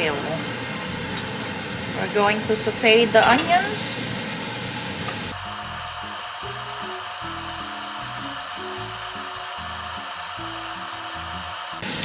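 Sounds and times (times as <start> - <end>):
onions sizzling in a pan: 1.0 - 12.0
slow low background music: 5.4 - 11.5.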